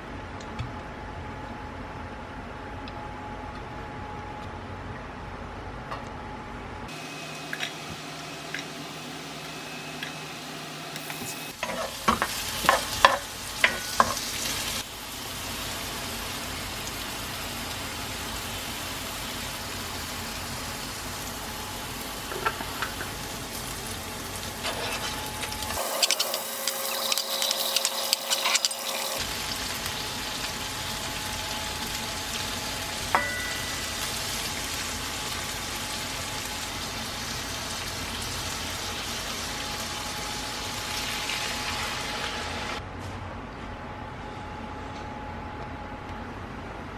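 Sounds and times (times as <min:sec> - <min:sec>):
food sizzling in a pot: 0:06.9 - 0:42.8
stirring clatter: 0:25.8 - 0:29.2.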